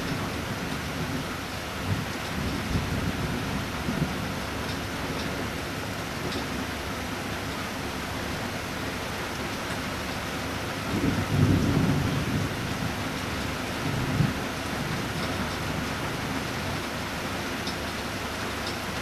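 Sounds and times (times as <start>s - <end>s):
steady rain: 0.0s - 19.0s
thunder rumbling: 10.9s - 16.2s.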